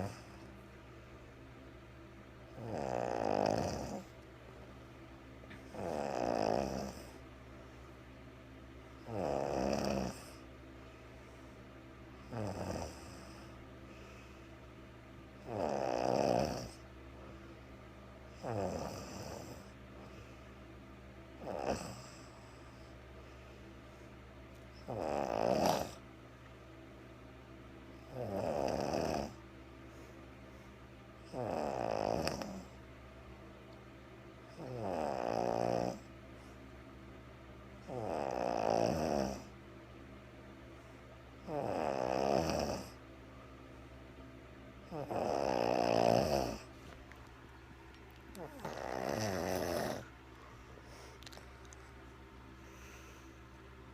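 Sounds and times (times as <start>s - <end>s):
woman snoring: 0.0s - 0.5s, 2.5s - 4.2s, 5.7s - 7.2s, 9.0s - 10.4s, 12.2s - 13.6s, 15.4s - 16.8s, 18.4s - 19.8s, 21.4s - 22.8s, 24.8s - 26.0s, 28.0s - 29.4s, 31.2s - 32.8s, 34.5s - 36.1s, 37.8s - 39.6s, 41.4s - 43.0s, 44.8s - 46.8s, 48.3s - 50.1s.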